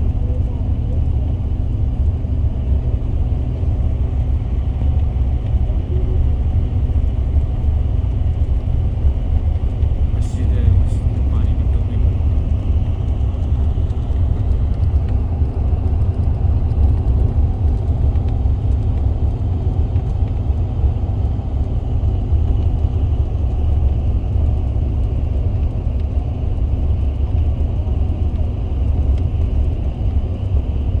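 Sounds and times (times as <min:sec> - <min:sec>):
car interior road rumble: 0:00.0 - 0:31.0.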